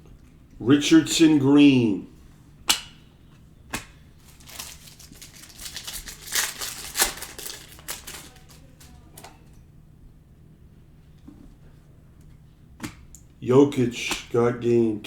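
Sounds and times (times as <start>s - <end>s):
trading cards rustling and clicking: 3.7s - 9.2s.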